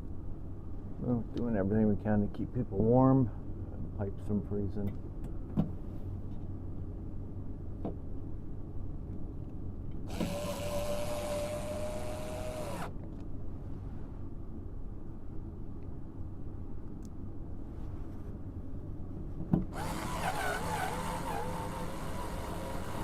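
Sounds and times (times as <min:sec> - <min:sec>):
steady low hum: 0:00.0 - 0:23.0
power drill whining: 0:10.1 - 0:12.9, 0:19.8 - 0:23.0.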